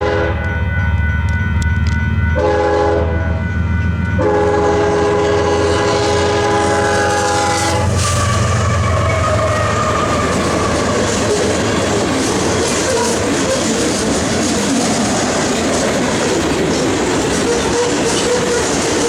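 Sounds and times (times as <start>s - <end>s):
locomotive air horn blasts: 0.0s - 12.0s, 17.5s - 19.0s
train rumbling: 0.0s - 19.0s.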